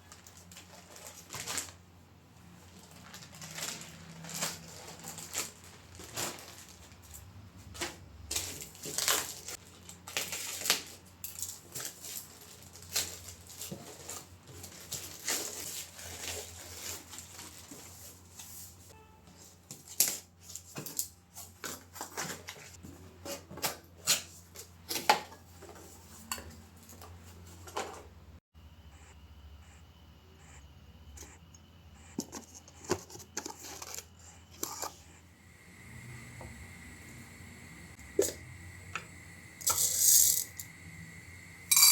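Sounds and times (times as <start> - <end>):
small objects clicking and tapping: 38.2 - 40.7.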